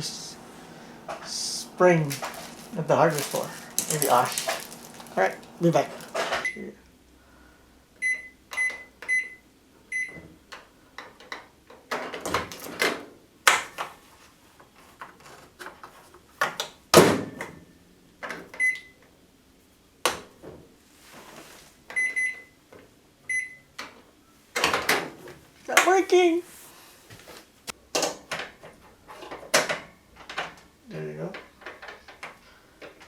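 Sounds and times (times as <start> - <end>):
microwave keypad beeps: 8.0 - 10.2, 18.6 - 19.0, 22.0 - 22.6, 23.3 - 23.7.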